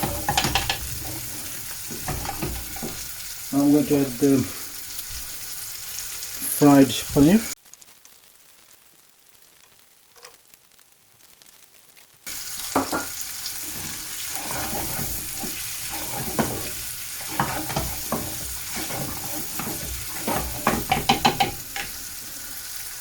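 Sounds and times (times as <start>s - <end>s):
spoon scraping a pan: 0.0s - 3.3s, 12.3s - 22.8s
food sizzling in a pan: 0.0s - 23.0s
spoon clinking against a pan: 17.3s - 22.0s.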